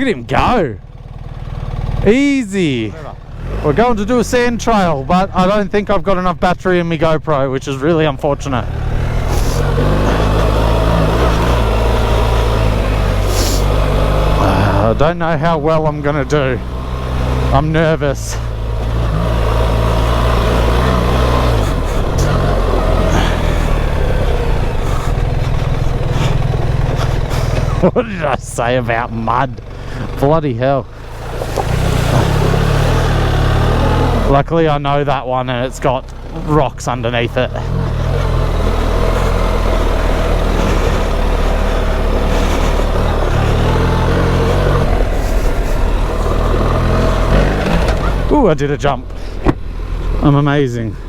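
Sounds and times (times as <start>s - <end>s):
motorcycle engine running: 0.0s - 51.0s
wind and riding noise: 0.0s - 51.0s
tyre noise: 30.9s - 34.4s, 37.5s - 51.0s.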